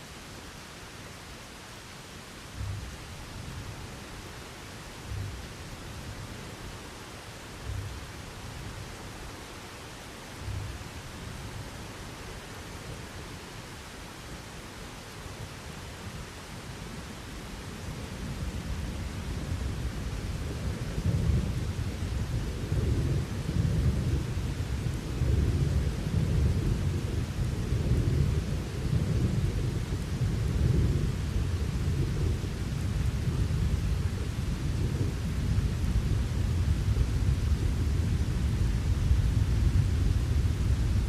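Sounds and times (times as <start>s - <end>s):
rain hiss: 0.0s - 41.0s
thunder rumbling: 5.0s - 6.5s, 7.6s - 9.0s, 10.4s - 12.0s, 17.8s - 41.0s.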